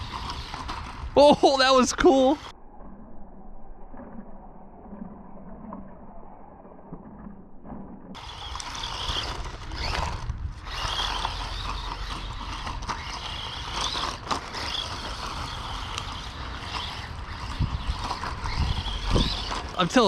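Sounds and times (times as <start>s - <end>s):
drivetrain and tyres rattling: 8.2s - 20.0s
electric motor whining: 8.2s - 20.0s.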